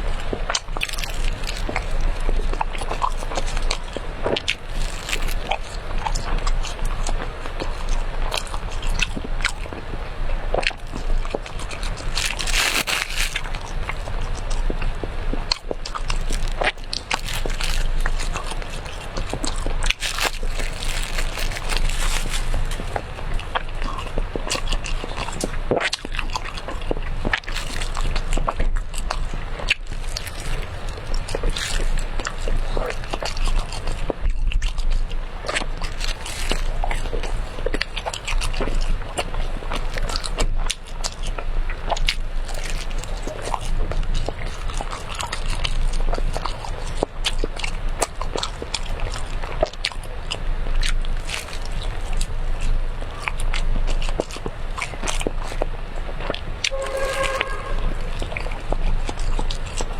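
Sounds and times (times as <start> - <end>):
biting and chewing cake: 0.0 - 59.9.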